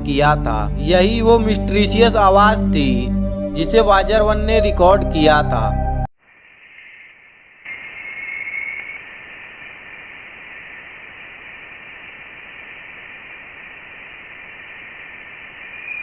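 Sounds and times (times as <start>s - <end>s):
steady hiss: 6.2s - 16.0s.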